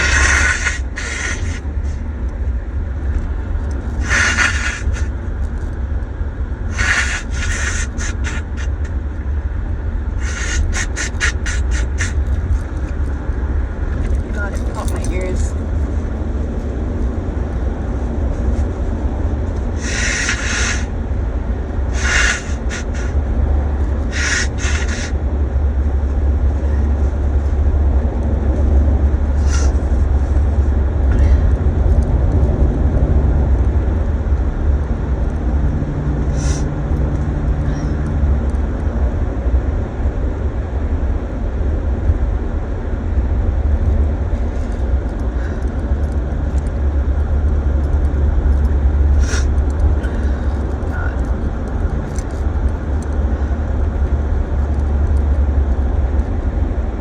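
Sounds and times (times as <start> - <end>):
short hissing bursts: 0.0 - 1.6, 4.0 - 5.1, 6.7 - 8.8, 10.2 - 12.2, 19.8 - 20.9, 21.9 - 23.2, 24.1 - 25.1, 29.4 - 29.8, 36.4 - 36.6, 49.2 - 49.5
car engine and road noise: 0.0 - 57.0.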